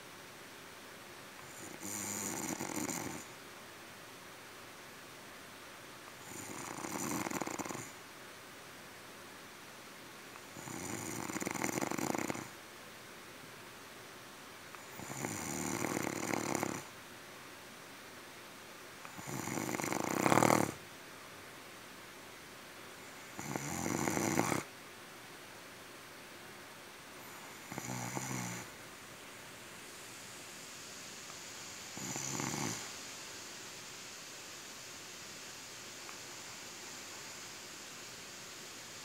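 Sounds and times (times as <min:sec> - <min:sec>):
person snoring: 0:01.5 - 0:03.3, 0:06.2 - 0:08.0, 0:10.6 - 0:12.5, 0:14.9 - 0:16.9, 0:19.1 - 0:20.8, 0:23.3 - 0:24.7, 0:27.3 - 0:28.7, 0:31.9 - 0:32.9.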